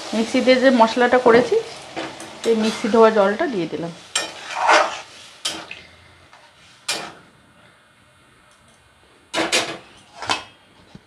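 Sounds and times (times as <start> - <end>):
cooking hiss: 0.0 - 11.0
metal clinking against pan: 4.1 - 4.5.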